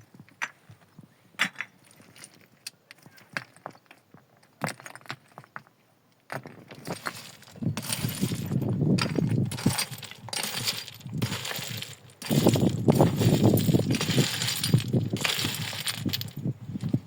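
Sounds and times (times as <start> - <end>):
stones clinking and grinding: 6.3 - 17.0.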